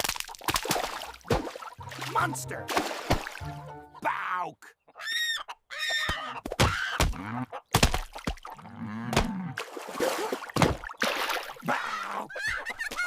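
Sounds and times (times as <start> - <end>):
cartoon chicken squawking: 4.0 - 7.7, 11.6 - 13.0.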